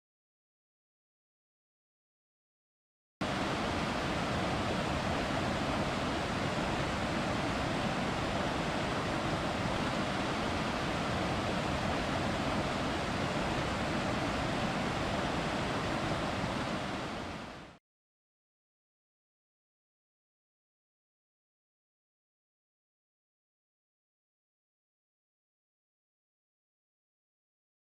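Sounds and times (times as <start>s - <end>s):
steady rushing noise: 3.2s - 17.8s.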